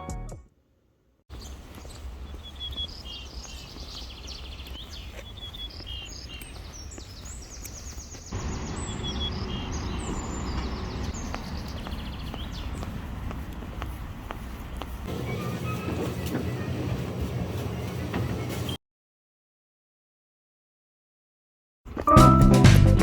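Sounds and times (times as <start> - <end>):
small birds chirping and trilling: 1.3 - 18.8.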